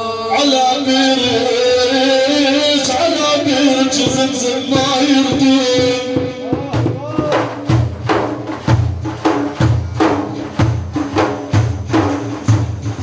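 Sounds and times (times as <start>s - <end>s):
frame drums with jingles: 3.7s - 13.0s.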